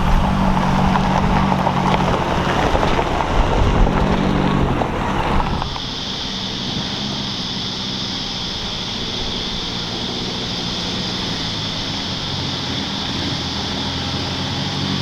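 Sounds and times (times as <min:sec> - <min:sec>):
vehicle engine running: 0:00.0 - 0:15.0
high-pitched hiss: 0:03.2 - 0:15.0.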